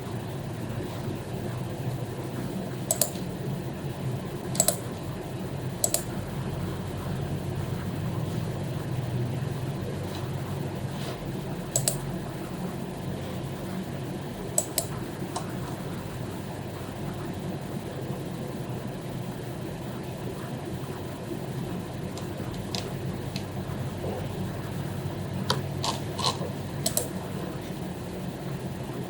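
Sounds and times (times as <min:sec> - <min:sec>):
steady low hum: 0:00.0 - 0:29.0
keyboard and mouse clicks: 0:02.9 - 0:03.3, 0:04.5 - 0:04.8, 0:05.8 - 0:06.1, 0:11.7 - 0:12.0, 0:14.6 - 0:15.5, 0:25.5 - 0:27.2.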